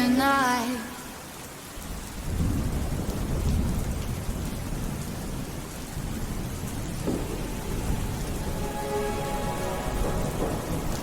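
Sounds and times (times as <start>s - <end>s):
heavy rain: 0.0s - 11.0s
thunder rumbling: 1.8s - 11.0s.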